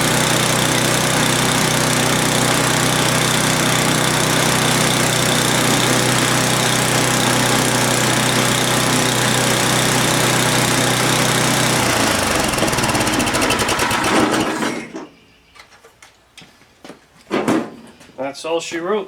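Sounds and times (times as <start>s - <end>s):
small engine running: 0.0s - 15.0s.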